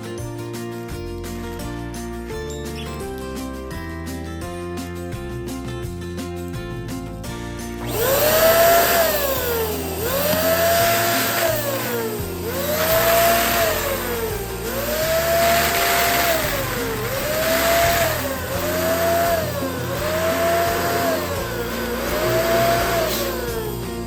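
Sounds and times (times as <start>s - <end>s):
background music: 0.0s - 24.0s
electric balloon pump whining: 7.7s - 24.0s.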